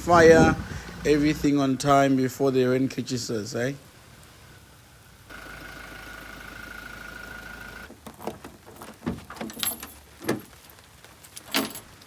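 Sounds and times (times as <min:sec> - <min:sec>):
car engine idling: 0:02.8 - 0:08.1
knocks and clatters: 0:07.9 - 0:10.6.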